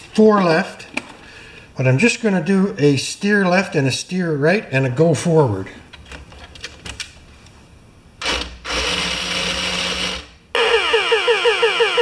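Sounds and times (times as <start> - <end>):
small electric motor whirring: 8.2 - 12.0.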